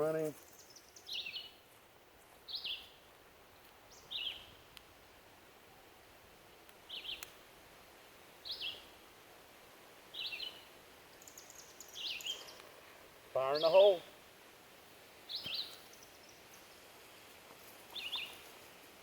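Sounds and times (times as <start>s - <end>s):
songbird chirping: 0.0s - 4.9s, 6.6s - 7.4s, 8.4s - 9.0s, 10.1s - 14.2s, 14.8s - 19.0s
faint outdoor hiss: 0.0s - 19.0s.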